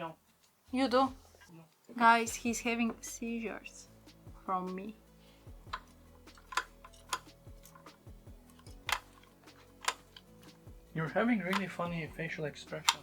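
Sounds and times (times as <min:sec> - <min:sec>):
metal and plastic parts clicking: 0:05.7 - 0:10.6, 0:11.5 - 0:11.8, 0:12.8 - 0:13.0.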